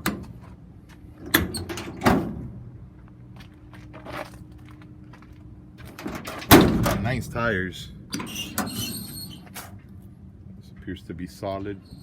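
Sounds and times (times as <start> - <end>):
metal doors opening and shutting: 0.0 - 0.4, 1.2 - 2.6, 5.8 - 7.4, 8.1 - 9.8.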